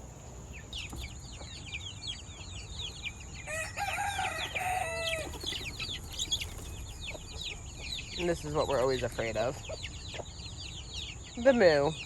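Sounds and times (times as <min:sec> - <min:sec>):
chicks peeping: 0:00.4 - 0:12.0
rooster crowing: 0:03.5 - 0:05.4.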